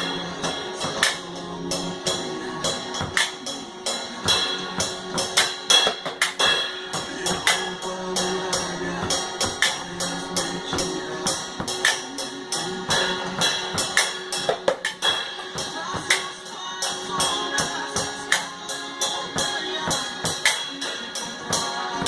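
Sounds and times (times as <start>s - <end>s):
worship song instrumental backing: 0.0s - 22.0s
percussion on tin cans: 4.2s - 12.2s, 12.8s - 21.8s.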